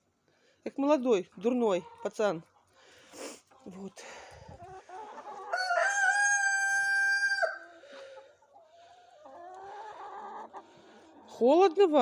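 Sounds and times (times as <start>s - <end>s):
hens clucking: 1.2s - 12.0s
rooster crowing: 5.5s - 7.8s.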